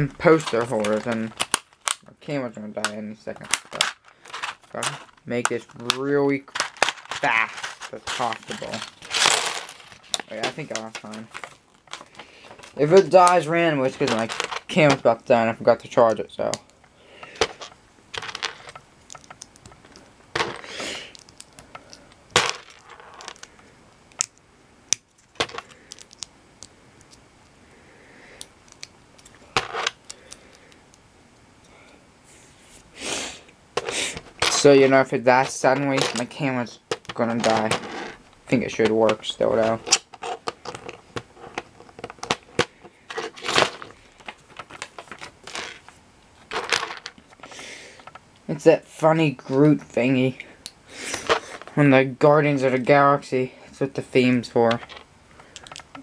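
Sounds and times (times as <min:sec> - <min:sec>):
packaging handling noises: 0:00.0 - 0:02.1, 0:02.8 - 0:15.0, 0:33.8 - 0:48.2
small plastic parts clicking: 0:00.3 - 0:02.2, 0:02.8 - 0:15.1, 0:15.8 - 0:27.2, 0:28.4 - 0:31.0, 0:54.6 - 0:56.0.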